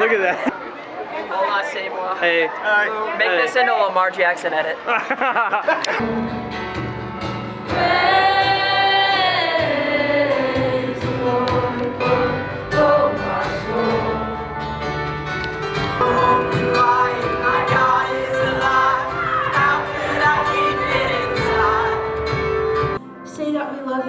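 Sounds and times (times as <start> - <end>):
band accompaniment: 6.0 - 23.0
voices singing worship music: 7.6 - 15.0, 15.7 - 23.0.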